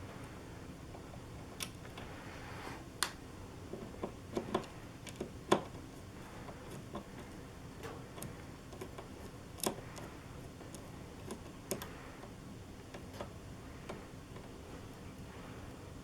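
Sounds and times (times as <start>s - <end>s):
light clicks and taps of tools: 3.0s - 5.8s, 6.5s - 12.3s.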